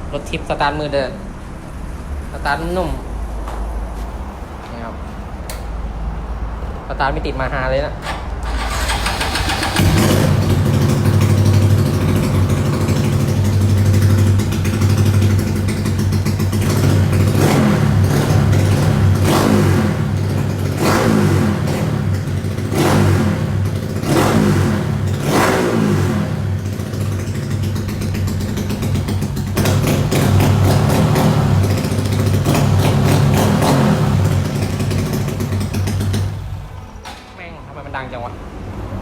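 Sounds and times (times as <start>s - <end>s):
motorcycle engine idling and revving: 8.0s - 37.0s.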